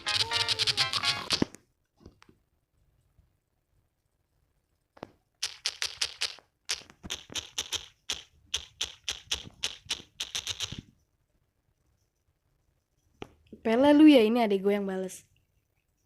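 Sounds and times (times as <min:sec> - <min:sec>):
smartphone keyboard typing taps: 0:05.0 - 0:10.9.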